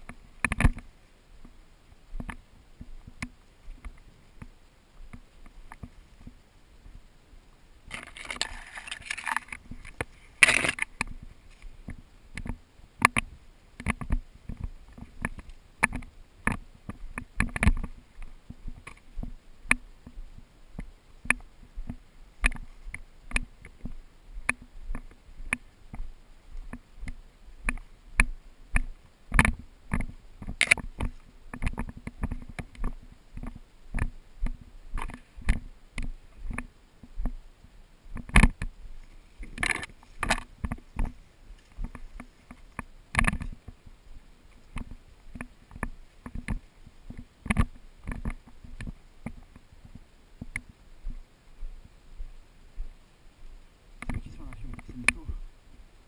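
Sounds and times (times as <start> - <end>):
footsteps walking: 0.0 - 55.5
rustling: 0.0 - 56.0.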